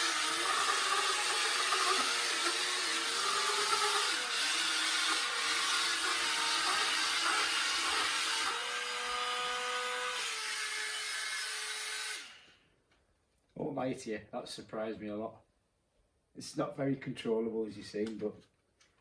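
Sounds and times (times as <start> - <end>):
toy car suction fan whirring: 0.0 - 12.5
toy drive motors whining: 0.0 - 12.5.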